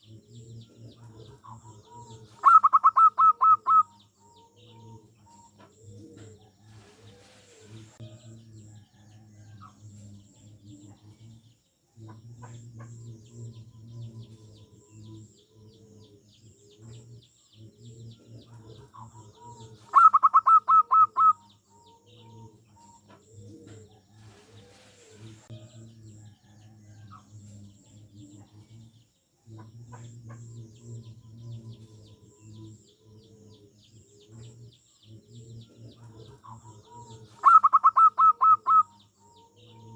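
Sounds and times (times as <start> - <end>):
doves cooing: 0.0 - 8.0, 12.1 - 25.5, 29.6 - 39.9.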